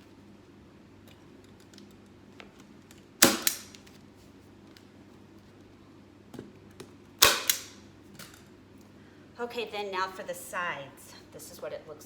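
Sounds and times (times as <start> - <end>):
staple gun firing: 3.2 - 3.8, 7.2 - 7.8.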